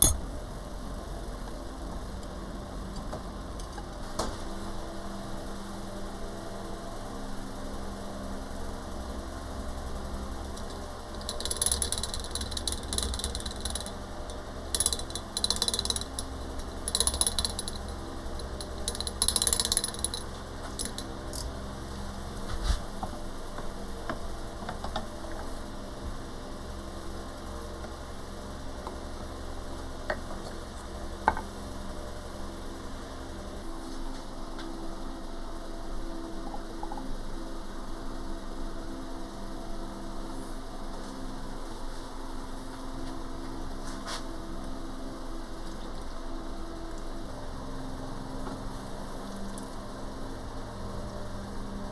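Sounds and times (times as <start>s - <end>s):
metal tools clinking: 0.0s - 0.2s
steady low hum: 0.0s - 51.9s.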